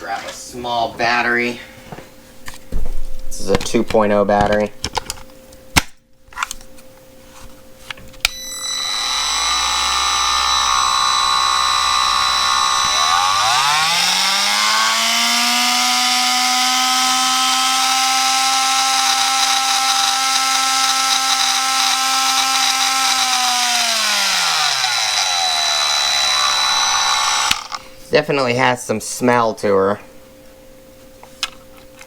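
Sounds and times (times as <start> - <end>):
oscillating multi-tool whining: 8.2 - 27.9.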